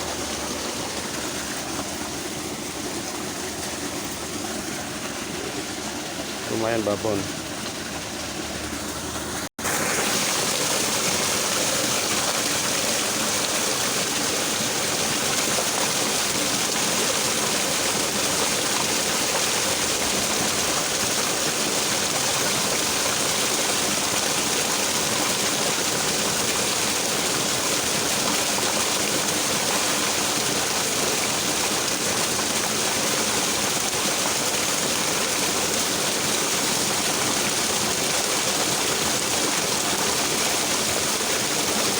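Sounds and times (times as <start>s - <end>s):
stream babbling: 0.0s - 41.9s.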